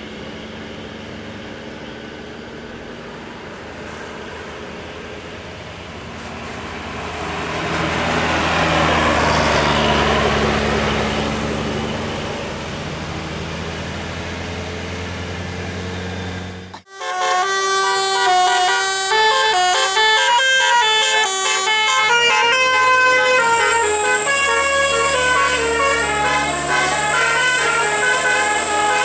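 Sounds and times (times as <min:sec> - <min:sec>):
vehicle driving past: 0:05.7 - 0:16.7, 0:21.7 - 0:29.0.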